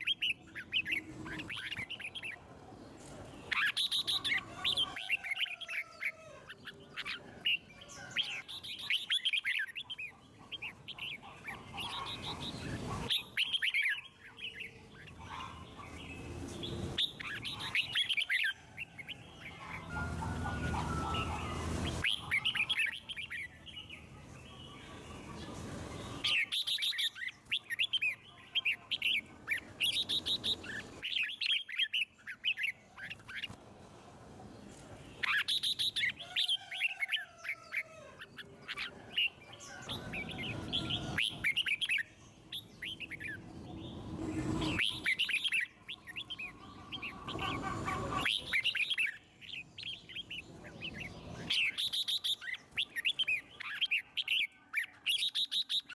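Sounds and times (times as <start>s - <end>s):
bulbuls singing: 0.0s - 55.9s.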